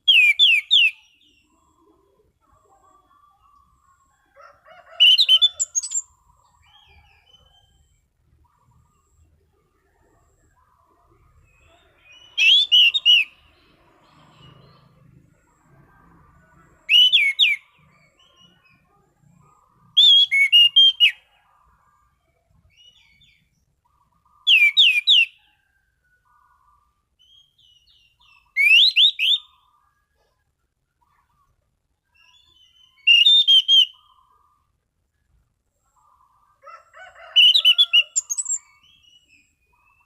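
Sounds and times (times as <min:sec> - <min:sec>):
thrush singing whistled notes: 0:00.0 - 0:02.0, 0:04.9 - 0:09.3, 0:11.1 - 0:15.0, 0:16.7 - 0:18.8, 0:19.7 - 0:21.8, 0:22.7 - 0:25.7, 0:27.2 - 0:29.9, 0:32.1 - 0:34.7, 0:37.2 - 0:40.0.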